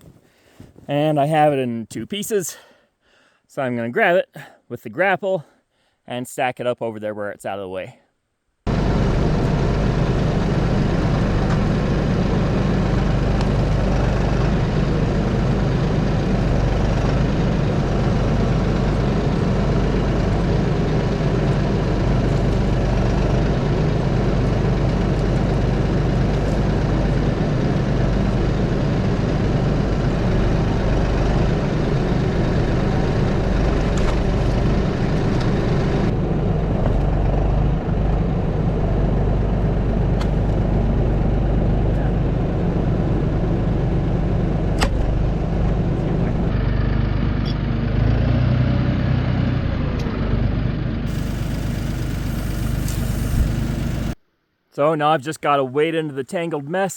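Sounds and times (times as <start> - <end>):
tractor engine running: 8.7 - 54.2.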